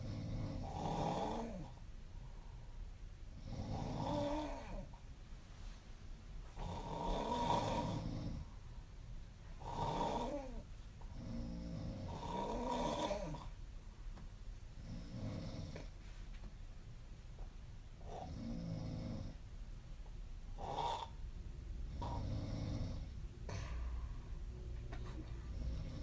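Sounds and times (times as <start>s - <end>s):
woman snoring: 0.0s - 1.8s, 3.4s - 4.9s, 6.6s - 8.5s, 9.6s - 13.6s, 14.8s - 15.9s, 18.0s - 19.4s, 20.6s - 21.2s, 21.9s - 23.7s, 25.5s - 26.0s
quiet breathing: 0.0s - 13.7s, 14.7s - 16.6s, 20.5s - 26.0s.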